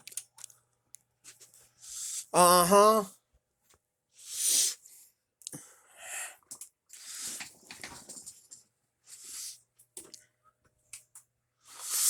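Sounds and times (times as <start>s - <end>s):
person breathing and sniffing: 1.8s - 2.3s, 4.2s - 6.4s, 7.0s - 7.6s, 9.1s - 9.6s, 11.6s - 12.0s.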